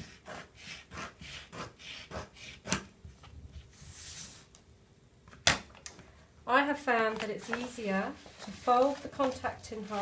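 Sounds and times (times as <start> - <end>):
plastic sheet rustling: 7.2 - 10.0.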